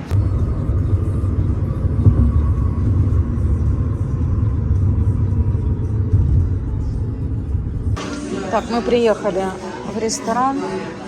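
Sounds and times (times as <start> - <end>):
faint steady whine: 0.0 - 8.1
vehicle rumble: 0.0 - 8.1.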